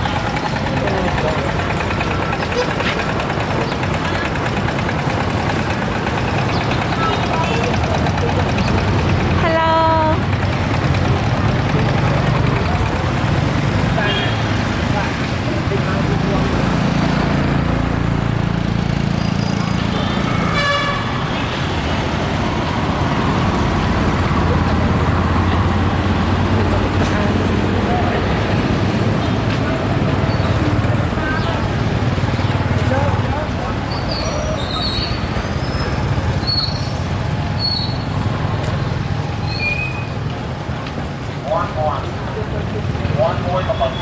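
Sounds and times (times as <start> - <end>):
crowd noise: 0.0 - 44.0
road traffic engine hum: 0.0 - 44.0
short vehicle horn toot: 20.0 - 21.1
high-pitched chirps or squeaks: 37.6 - 38.1.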